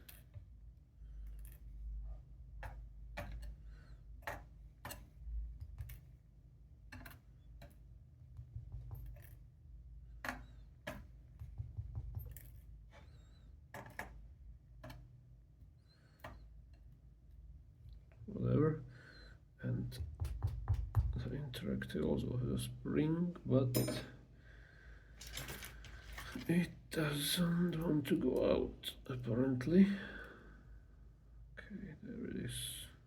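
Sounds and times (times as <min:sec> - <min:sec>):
low steady hum: 0:00.0 - 0:33.0.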